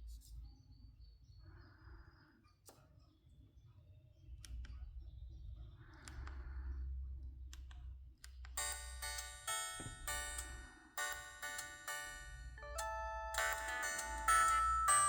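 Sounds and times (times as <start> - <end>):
phone ringtone melody: 8.6 - 15.0.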